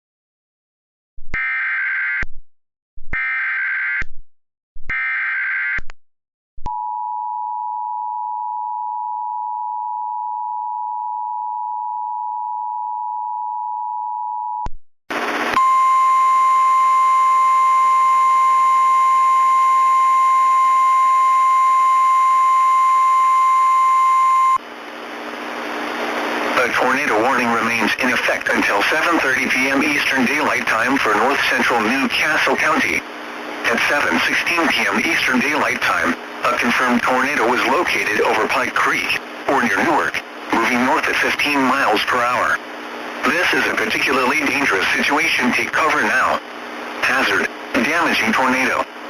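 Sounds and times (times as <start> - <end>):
two-tone attention signal: 15.6 - 24.6.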